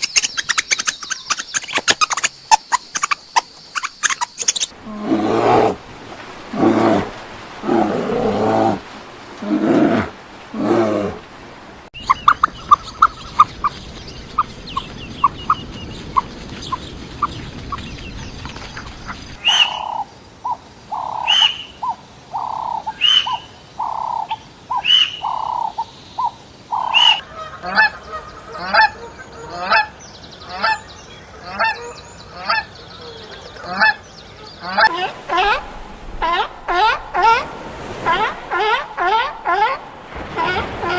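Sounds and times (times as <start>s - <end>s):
waterfowl peeping: 0.0s - 4.7s, 12.0s - 29.9s, 34.6s - 40.9s
waterfowl honking: 26.7s - 29.9s, 34.6s - 40.9s.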